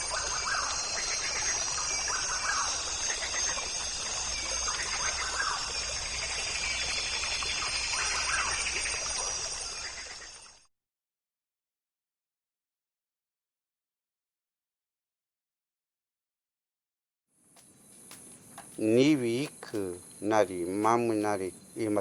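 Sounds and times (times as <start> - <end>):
birds calling: 0.0 - 9.0, 17.6 - 22.0.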